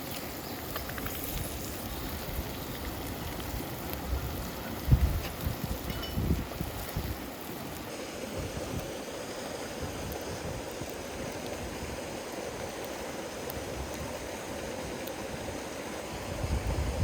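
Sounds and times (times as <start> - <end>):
wind thumps on microphone: 4.1 - 7.2
river water rushing: 7.2 - 16.4.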